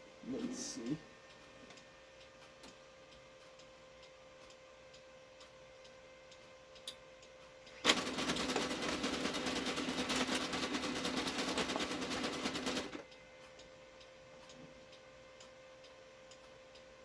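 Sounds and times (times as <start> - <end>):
printer paper feed rattling: 7.8 - 13.0.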